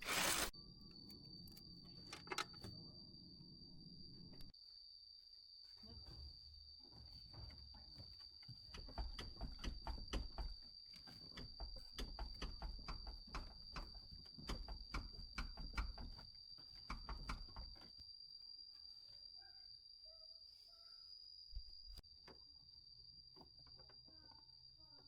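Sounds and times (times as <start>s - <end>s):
tools clicking and knocking: 8.6s - 17.8s.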